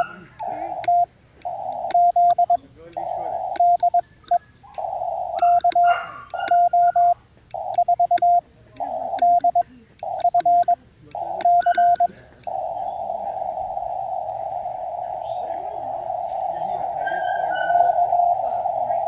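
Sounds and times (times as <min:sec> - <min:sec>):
morse code beeps: 0:00.0 - 0:13.8, 0:17.6 - 0:18.4
radio receiver hiss: 0:07.1 - 0:17.0.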